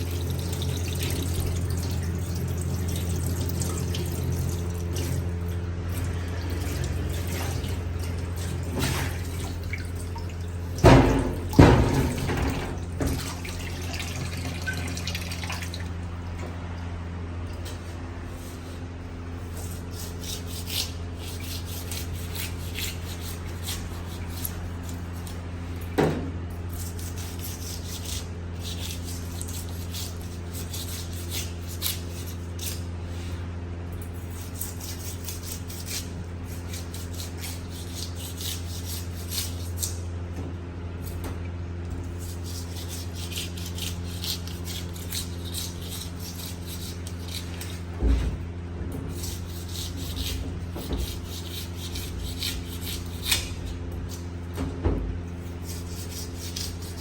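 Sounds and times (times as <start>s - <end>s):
knife scraping fish: 5.9s - 9.9s, 18.3s - 26.0s, 26.6s - 40.1s, 41.0s - 48.2s, 49.1s - 54.4s, 55.3s - 57.0s.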